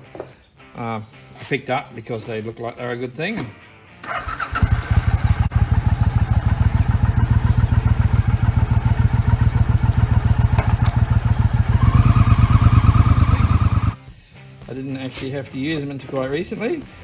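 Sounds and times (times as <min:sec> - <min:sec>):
motorcycle engine idling: 0:04.0 - 0:14.0.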